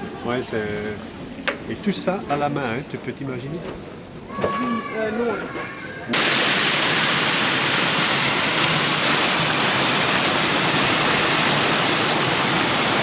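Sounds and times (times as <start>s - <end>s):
loud rush of water: 6.2s - 13.0s.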